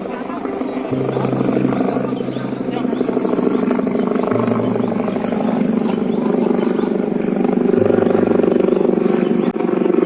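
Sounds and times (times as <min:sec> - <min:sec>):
helicopter rotor chop and engine: 0:00.0 - 0:10.0.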